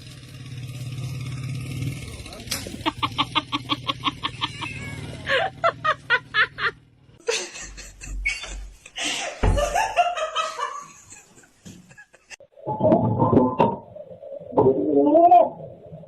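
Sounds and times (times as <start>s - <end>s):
person laughing: 2.7s - 12.4s.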